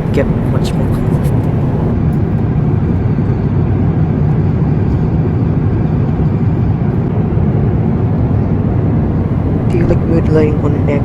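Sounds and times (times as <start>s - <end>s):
airplane cabin rumble: 0.0s - 11.0s.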